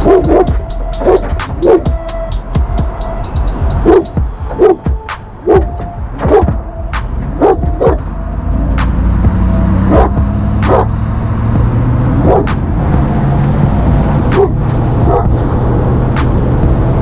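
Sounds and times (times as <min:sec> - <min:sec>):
dog barking: 0:00.0 - 0:01.9, 0:03.8 - 0:04.8, 0:05.4 - 0:06.5, 0:07.4 - 0:08.0, 0:09.9 - 0:10.9, 0:12.2 - 0:12.6, 0:14.4 - 0:15.3
vehicle engine running: 0:00.0 - 0:17.0.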